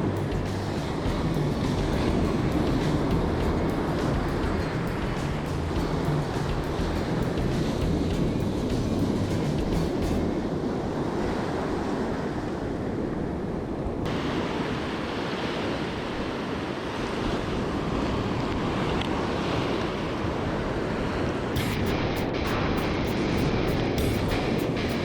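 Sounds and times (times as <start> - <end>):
wind buffeting microphone: 0.0 - 14.1
waves rushing: 0.0 - 25.0.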